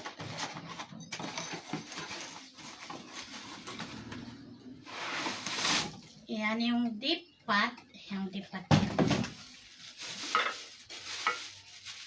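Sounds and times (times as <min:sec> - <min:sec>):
packaging rustling and crinkling: 0:00.0 - 0:06.2, 0:09.1 - 0:12.0.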